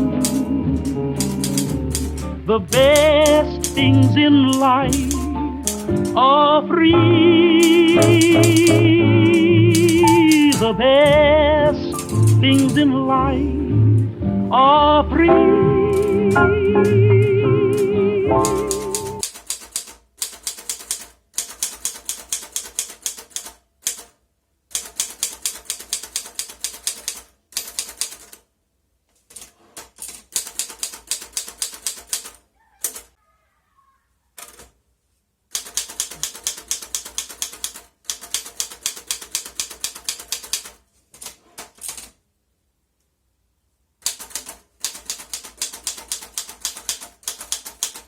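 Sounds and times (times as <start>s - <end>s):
typewriter keystrokes: 0.0s - 6.3s, 7.5s - 11.3s, 11.9s - 13.0s, 15.9s - 17.1s, 17.7s - 28.4s, 29.3s - 33.1s, 34.4s - 34.7s, 35.5s - 42.2s, 44.0s - 48.0s.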